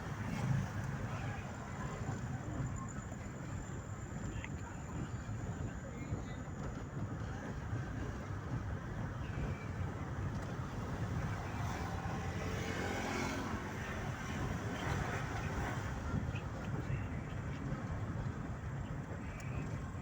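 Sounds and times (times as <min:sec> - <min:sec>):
motor vehicle passing by: 0:00.0 - 0:02.4, 0:09.7 - 0:16.6.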